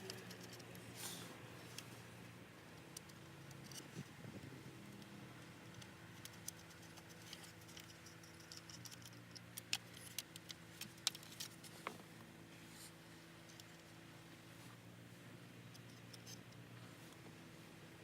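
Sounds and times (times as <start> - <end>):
small hard parts clicking: 0.0 - 0.8, 4.9 - 11.7
faint steady hum: 0.0 - 18.0.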